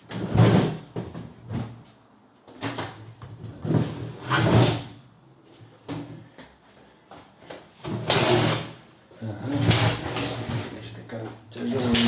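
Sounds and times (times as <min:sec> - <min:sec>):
bathtub scraping across floor: 0:03.4 - 0:05.0, 0:07.8 - 0:12.0.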